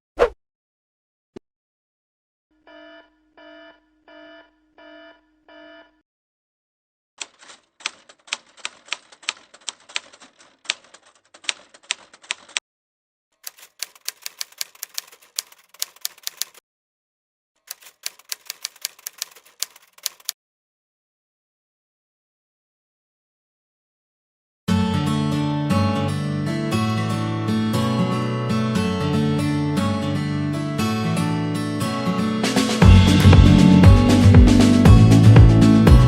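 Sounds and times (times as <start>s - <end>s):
electronic alarm beeps: 2.7s - 6.0s
typewriter key clicks: 7.2s - 12.6s, 13.4s - 16.6s, 17.7s - 20.4s.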